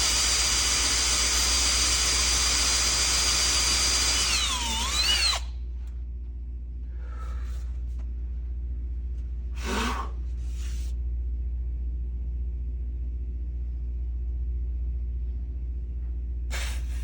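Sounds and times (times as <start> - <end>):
steady low hum: 0.0 - 17.0
short hissing noises: 16.5 - 17.0.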